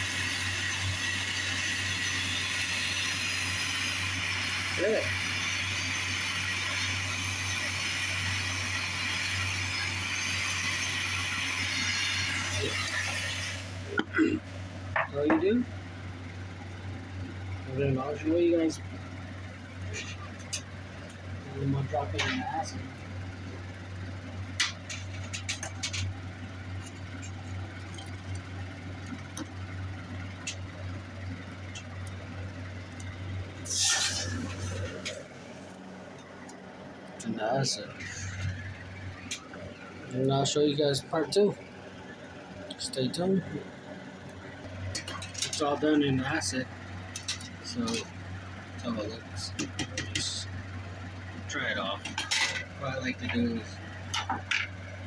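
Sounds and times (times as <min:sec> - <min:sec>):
soldering torch flame hissing: 0:00.0 - 0:14.8, 0:33.0 - 0:35.8
steady low hum: 0:00.0 - 0:55.0.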